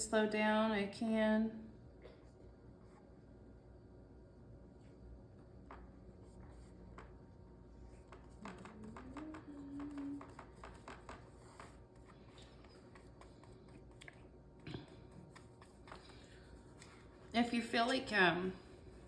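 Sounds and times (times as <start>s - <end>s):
paintbrush dabbing on canvas: 7.9s - 17.4s.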